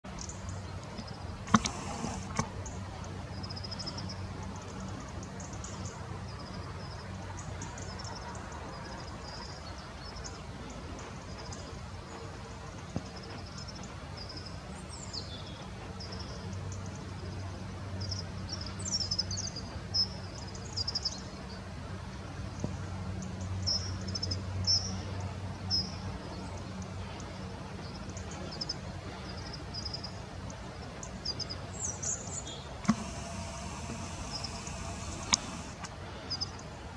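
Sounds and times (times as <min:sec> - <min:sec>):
steady low hum: 0:00.2 - 0:05.1, 0:32.4 - 0:36.9.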